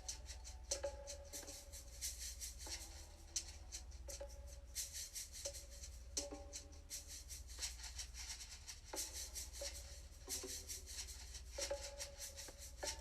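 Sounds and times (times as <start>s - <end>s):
soft shaker-like percussion: 0.0s - 13.0s.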